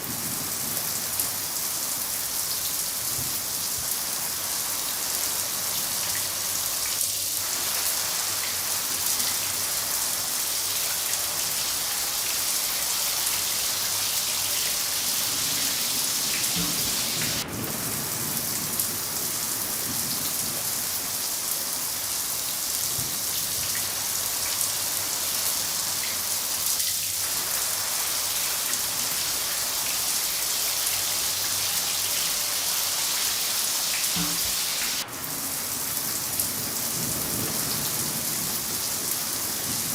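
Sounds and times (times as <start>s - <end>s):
steady rain hissing: 0.0s - 39.9s
distant thunder rumble: 15.4s - 20.9s.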